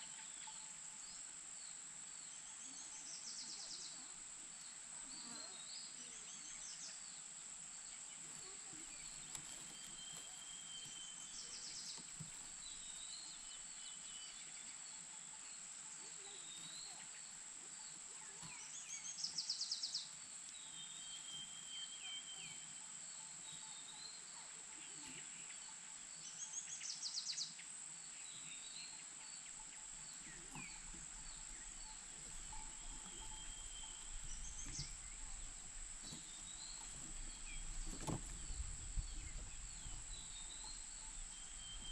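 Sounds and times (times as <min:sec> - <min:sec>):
birds chirping: 0:05.0 - 0:24.1, 0:28.2 - 0:41.9.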